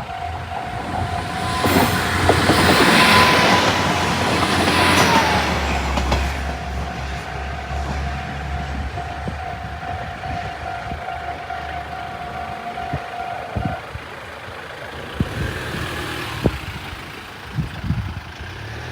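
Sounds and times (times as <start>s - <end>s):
level crossing alarm ringing: 0.0s - 14.4s
road vehicle engines running: 0.0s - 18.9s.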